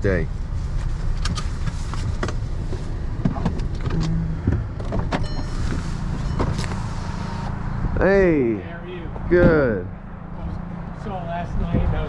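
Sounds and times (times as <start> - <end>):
vehicle engine idling: 0.0 - 12.0
high chime: 5.2 - 7.5.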